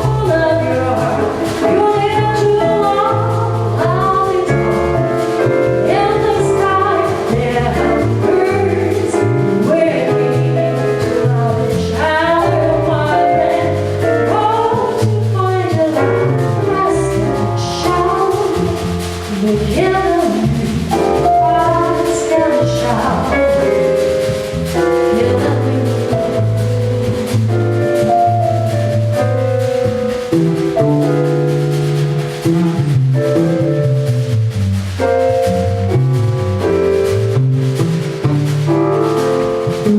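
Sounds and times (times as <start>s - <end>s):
woman singing: 0.0s - 4.9s, 5.8s - 23.5s, 25.0s - 26.4s
piano chords: 0.0s - 39.9s
walking bass line: 0.0s - 39.9s.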